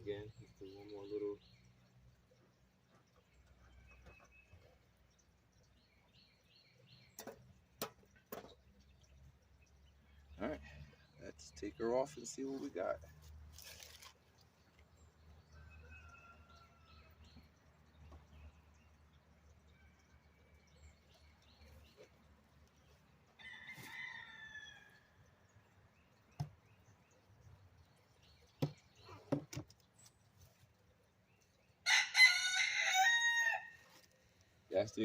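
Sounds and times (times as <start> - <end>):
rooster crowing: 31.8 - 33.8.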